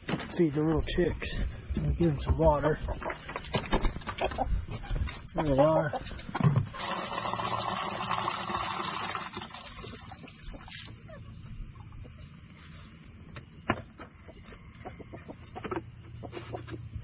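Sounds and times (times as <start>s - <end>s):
rushing pour into feeder: 6.8s - 10.9s.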